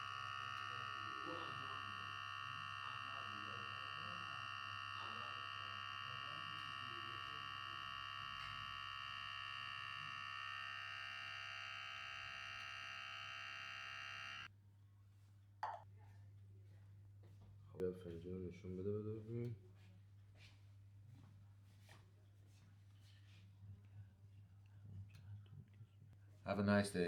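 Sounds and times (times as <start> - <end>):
espresso machine pump buzzing: 0.0 - 14.5.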